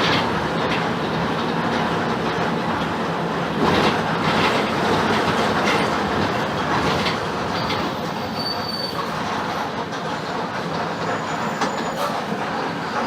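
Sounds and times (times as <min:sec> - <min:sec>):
diesel bus engine rattling: 0:00.0 - 0:13.0
high squeal: 0:08.2 - 0:09.1, 0:11.0 - 0:12.2.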